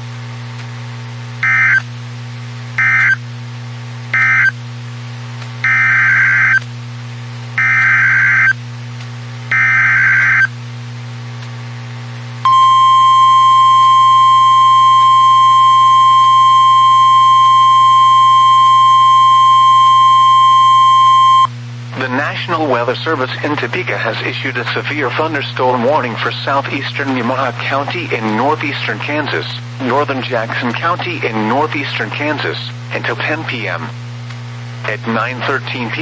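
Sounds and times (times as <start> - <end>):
constant low hum: 0.0 - 36.0
steady alarm tone: 1.4 - 1.8, 2.8 - 3.2, 4.2 - 4.5, 5.6 - 6.6, 7.6 - 8.6, 9.5 - 10.5, 12.5 - 21.5.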